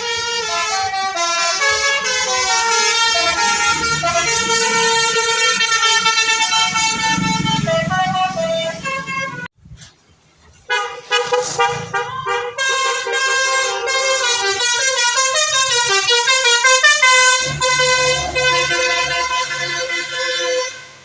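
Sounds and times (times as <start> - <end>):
bus horn playing melody: 0.0 - 9.5, 10.7 - 21.0.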